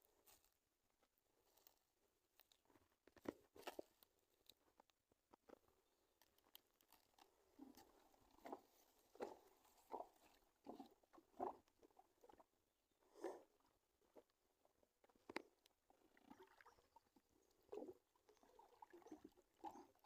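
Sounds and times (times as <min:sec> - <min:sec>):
faint clicks and knocks: 0:02.3 - 0:09.4.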